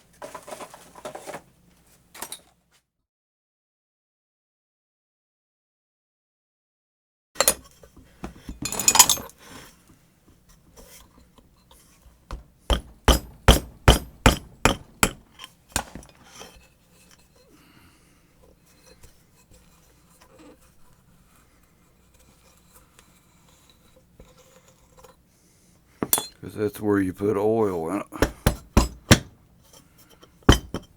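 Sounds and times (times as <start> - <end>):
faint handling noise: 0.0 - 2.8, 7.4 - 12.7, 15.2 - 30.9
metal clinking and clattering: 7.4 - 9.4, 26.0 - 26.4
sharp metal taps: 12.7 - 15.2.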